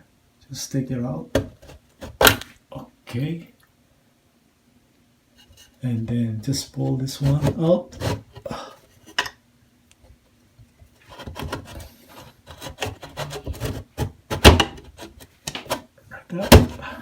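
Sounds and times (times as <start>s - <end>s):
fan parts scraping and knocking: 5.4s - 9.3s, 10.9s - 17.0s.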